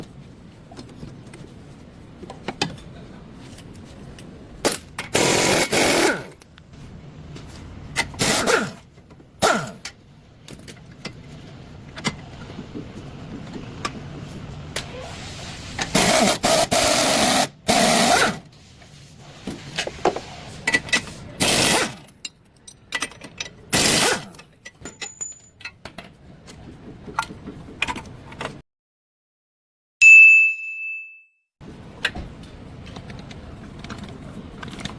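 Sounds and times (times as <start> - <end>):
metal tools clicking and knocking: 22.1 - 23.7, 24.4 - 26.2.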